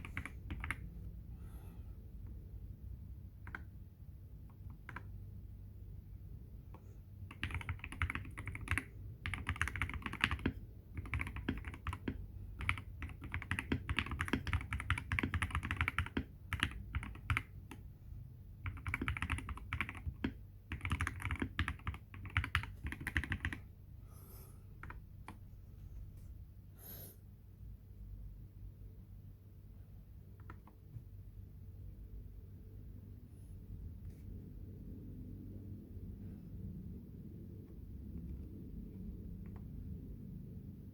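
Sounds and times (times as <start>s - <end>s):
typing on mechanical keyboard: 0.0s - 0.9s, 3.4s - 3.7s, 4.5s - 5.1s, 7.2s - 17.9s, 18.6s - 23.7s, 24.8s - 25.4s.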